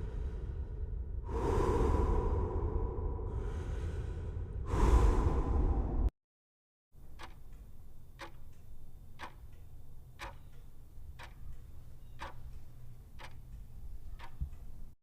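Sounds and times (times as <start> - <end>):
low hum: 0.0 - 6.1
clock ticking: 7.0 - 15.0.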